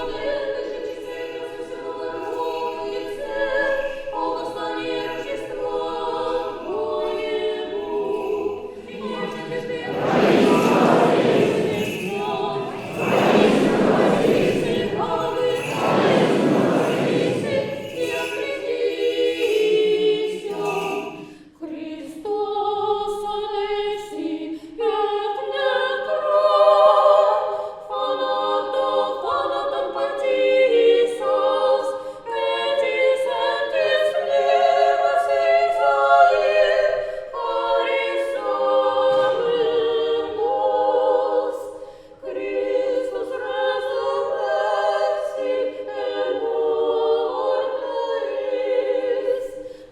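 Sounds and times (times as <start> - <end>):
church choir singing a cappella: 0.0 - 49.9
loud rushing noise: 9.7 - 18.2.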